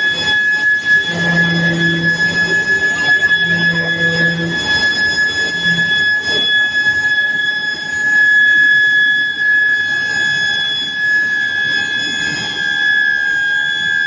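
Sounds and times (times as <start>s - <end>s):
mechanical background noise: 0.0s - 7.0s
furnace high-pitched whine: 0.0s - 14.0s.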